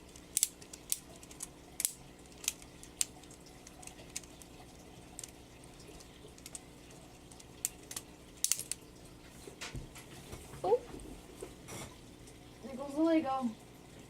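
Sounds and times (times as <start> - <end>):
plastic toy knife clicking: 0.2 - 2.6.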